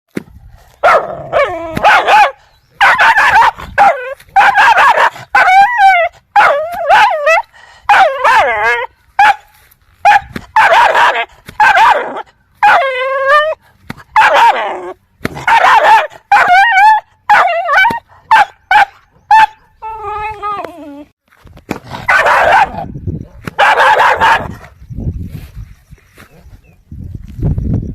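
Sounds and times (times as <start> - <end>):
dogs barking aggressively: 0.8 - 19.8, 21.8 - 24.8.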